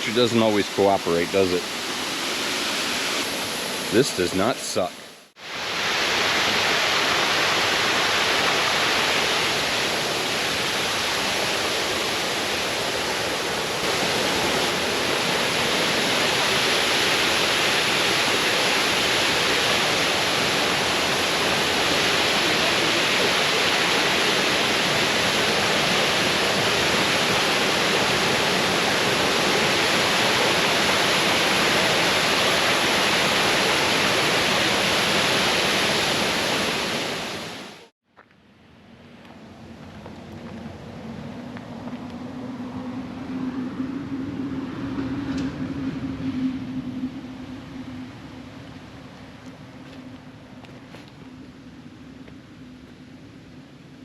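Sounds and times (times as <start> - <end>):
waterfall rushing: 0.0 - 37.9.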